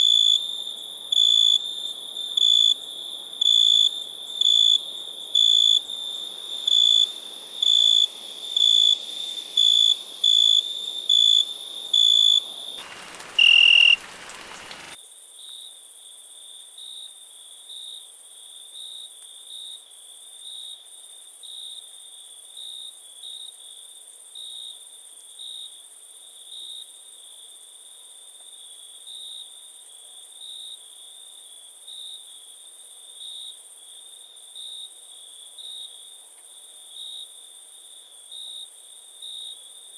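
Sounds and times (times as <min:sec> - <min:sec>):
crickets chirping: 0:00.0 - 0:15.0
steady high hiss: 0:04.2 - 0:15.0.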